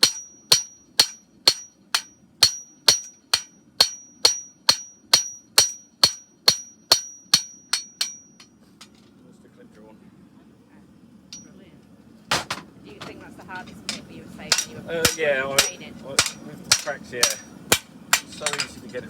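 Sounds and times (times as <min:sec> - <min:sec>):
hammer ringing on anvil: 0:00.0 - 0:08.6, 0:13.9 - 0:18.8.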